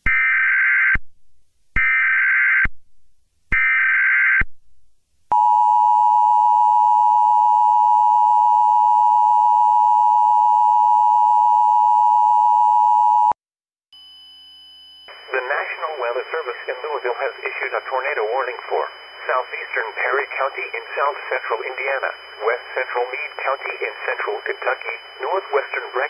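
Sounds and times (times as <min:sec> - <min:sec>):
digital data tone bursts: 0:15.1 - 0:26.0.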